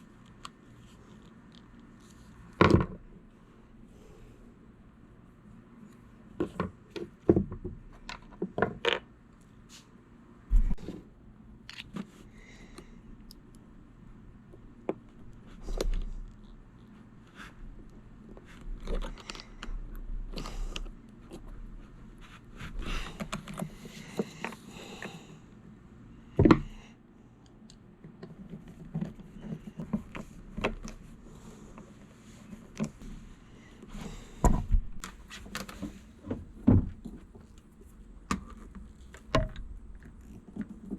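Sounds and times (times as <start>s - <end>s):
rustling and scraping: 28.1s - 40.9s.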